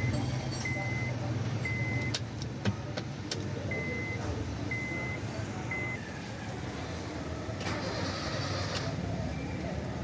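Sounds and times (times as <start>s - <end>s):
high electronic beeps: 0.0s - 2.1s.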